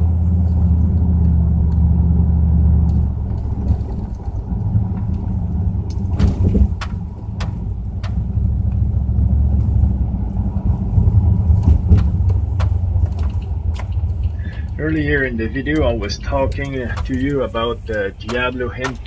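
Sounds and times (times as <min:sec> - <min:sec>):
engine and road rumble: 0:00.0 - 0:19.0
sharp clicks: 0:02.8 - 0:08.9, 0:11.6 - 0:19.0.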